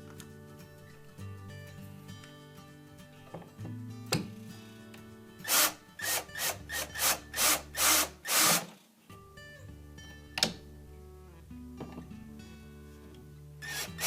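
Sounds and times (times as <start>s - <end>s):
soft guitar music: 0.0s - 8.2s, 8.8s - 14.0s.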